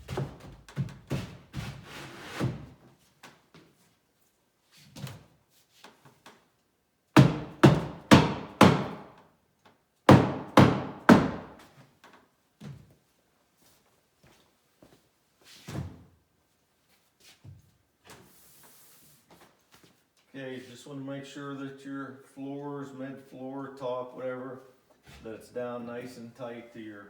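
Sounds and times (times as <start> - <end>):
knocks on wooden cabinet panel: 7.2 - 9.1, 10.1 - 11.6
heavy thunks on wood: 7.2 - 9.2, 10.1 - 11.6.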